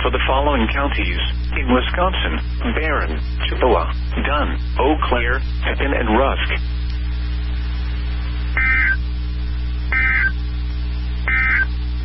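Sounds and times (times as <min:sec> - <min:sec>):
radio low hum: 0:00.0 - 0:12.0
raspy digital tone bursts: 0:08.6 - 0:09.0, 0:09.9 - 0:10.3, 0:11.3 - 0:11.7.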